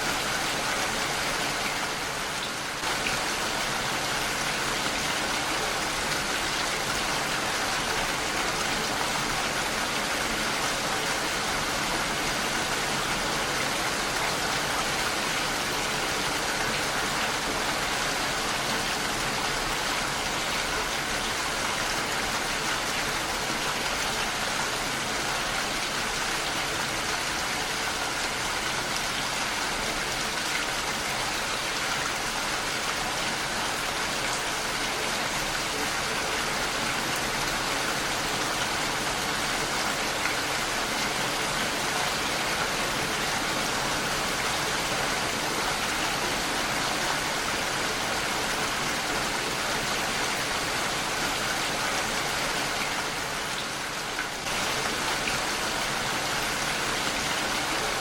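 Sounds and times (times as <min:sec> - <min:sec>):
heavy rain on a window: 0:00.0 - 0:58.0.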